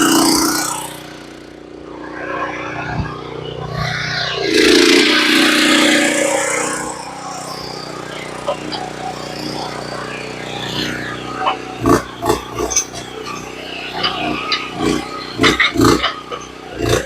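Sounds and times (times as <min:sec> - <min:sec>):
truck engine running: 0:00.0 - 0:17.0
loud rushing noise: 0:00.9 - 0:07.3.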